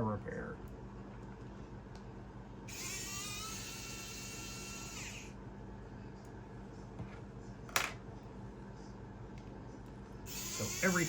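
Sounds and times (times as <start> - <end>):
small motor whirring: 2.7 - 5.4, 10.3 - 11.0.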